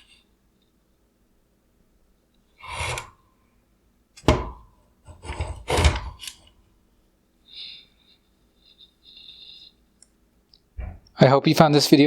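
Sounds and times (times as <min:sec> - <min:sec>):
scrape on work surface: 0:02.6 - 0:03.2
hard parts knocking and rattling: 0:04.2 - 0:06.3.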